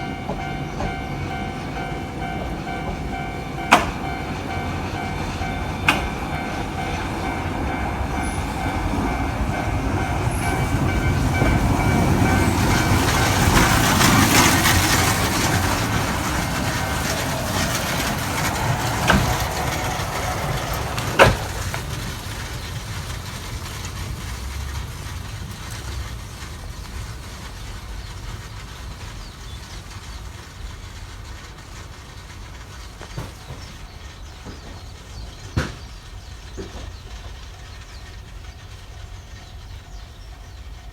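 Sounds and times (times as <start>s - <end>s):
steady ringing tones: 0.0s - 14.2s
wheels rumbling on rails: 0.0s - 40.9s.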